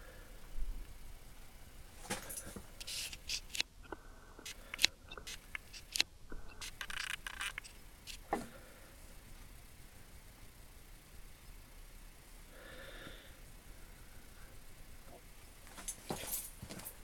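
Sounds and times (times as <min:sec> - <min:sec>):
hand tools clicking and tapping: 0:02.2 - 0:08.5.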